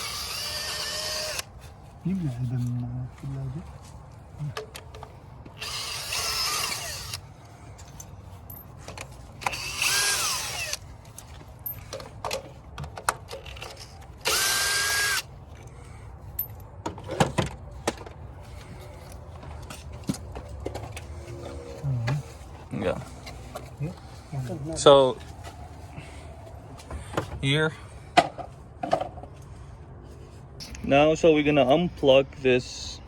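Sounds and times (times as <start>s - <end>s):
power drill motor whine: 0.0s - 1.5s, 5.6s - 7.2s, 9.4s - 10.8s, 14.2s - 15.3s.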